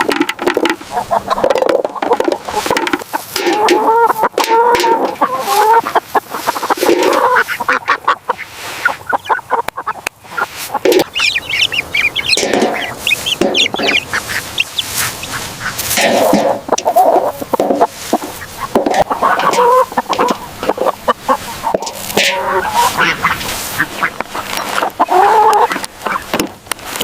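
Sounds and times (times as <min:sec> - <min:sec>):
fowl honking: 0:02.4 - 0:26.4
rapid high-pitched chirps: 0:11.0 - 0:15.4.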